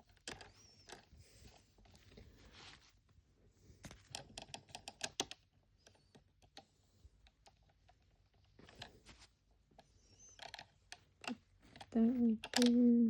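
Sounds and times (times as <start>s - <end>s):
small plastic items clicking: 10.2s - 13.0s.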